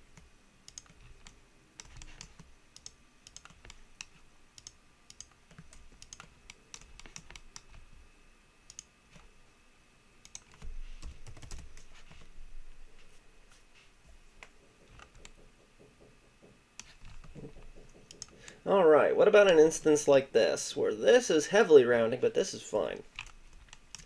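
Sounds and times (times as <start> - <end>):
keyboard and mouse clicking: 0.1 - 7.8, 8.7 - 9.3, 10.2 - 12.3, 14.4 - 15.6, 16.8 - 18.6, 23.1 - 24.0.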